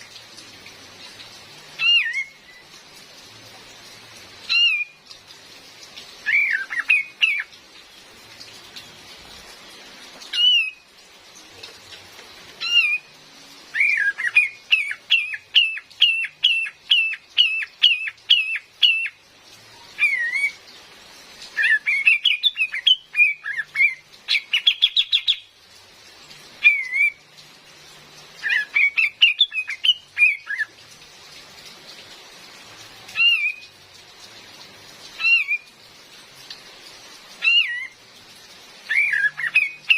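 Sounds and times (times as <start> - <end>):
steady rain hissing: 0.0 - 39.9
bird whistled calls and chattering: 6.2 - 7.5, 13.7 - 19.2, 19.8 - 20.6, 21.6 - 25.5, 26.6 - 27.2, 28.4 - 30.7, 37.4 - 38.0, 38.9 - 39.9.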